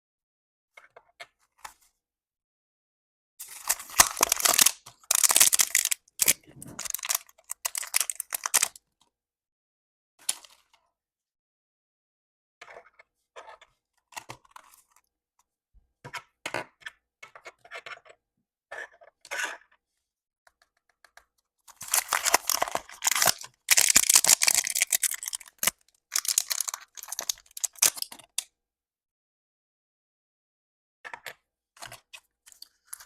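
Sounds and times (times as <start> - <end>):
packaging tearing and crinkling: 3.4 - 8.8, 21.7 - 28.2
packaging crinkles and taps: 3.6 - 8.8, 21.7 - 28.4.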